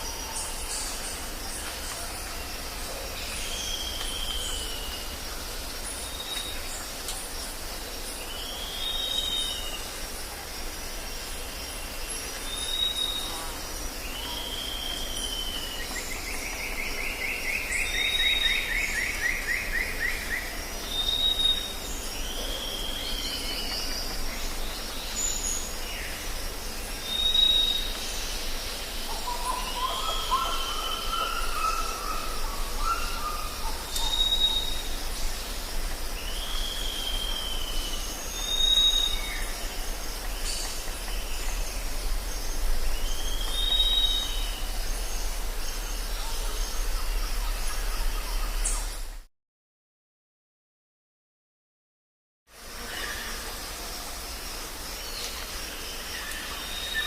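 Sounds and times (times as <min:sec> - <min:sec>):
insects droning: 0:00.0 - 0:49.2, 0:52.5 - 0:57.0
bird whistling: 0:34.0 - 0:34.8.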